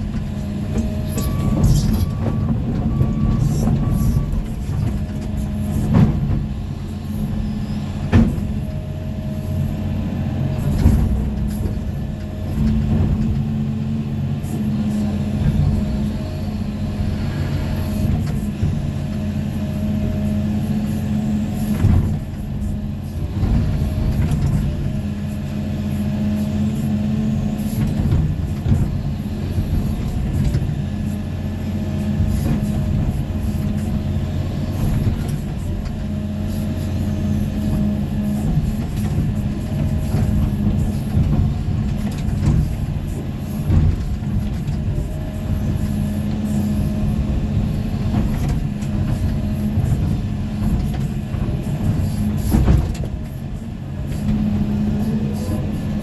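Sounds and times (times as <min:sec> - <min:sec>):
excavator diesel engine: 0:00.0 - 0:56.0
machine knocks and clanks: 0:04.7 - 0:06.6, 0:08.0 - 0:08.6.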